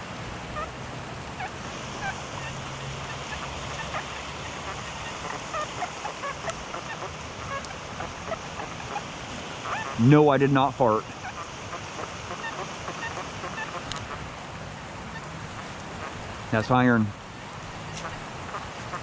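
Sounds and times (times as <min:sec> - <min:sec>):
rain hiss and patter: 0:00.0 - 0:19.0.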